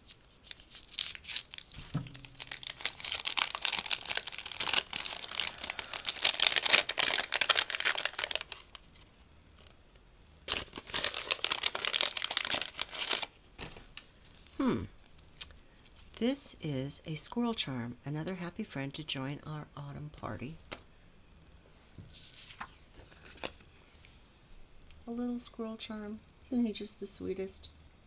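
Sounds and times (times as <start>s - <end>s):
gift wrapping crinkling and tearing: 0.0s - 9.1s, 10.5s - 13.3s, 22.2s - 23.6s.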